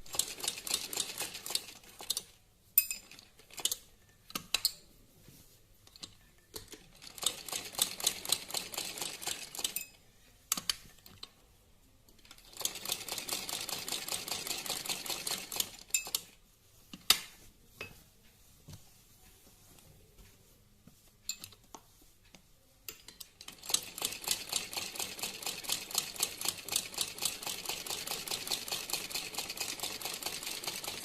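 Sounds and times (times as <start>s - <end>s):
sewing machine stitching: 6.9s - 9.8s, 12.2s - 16.3s, 23.4s - 31.0s.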